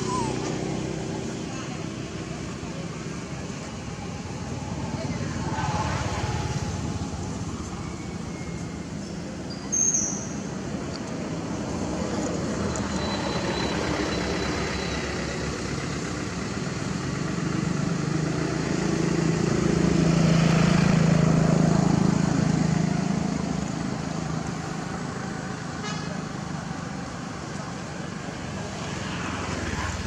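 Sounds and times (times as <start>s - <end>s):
vehicle passing by: 0.0s - 9.0s, 17.1s - 25.0s, 28.3s - 30.0s.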